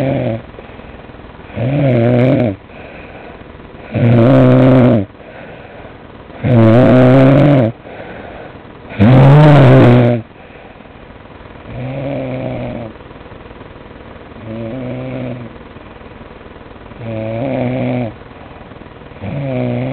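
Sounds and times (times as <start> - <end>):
loud snoring: 0.0 - 0.5, 1.5 - 2.9, 3.8 - 5.1, 6.4 - 7.8, 8.9 - 10.3, 11.7 - 13.0, 14.4 - 15.6, 17.0 - 18.2, 19.2 - 19.9
quiet breathing: 0.0 - 4.1, 5.0 - 6.5, 7.7 - 9.0, 10.2 - 11.1.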